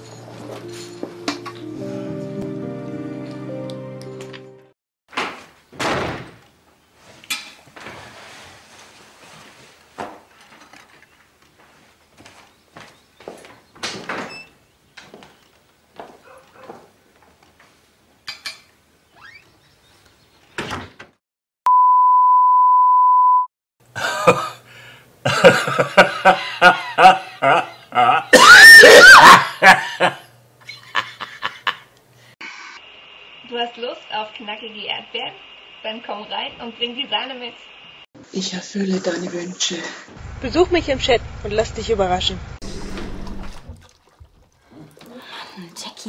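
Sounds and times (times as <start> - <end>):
knocks and thuds: 5.1 - 6.4
people laughing: 25.3 - 28.3, 29.0 - 31.8.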